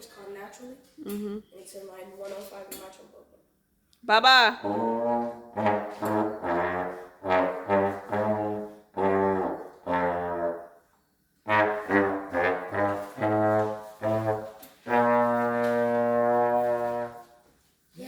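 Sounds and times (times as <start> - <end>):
brass instrument playing a tune: 4.6 - 10.8, 11.4 - 17.4.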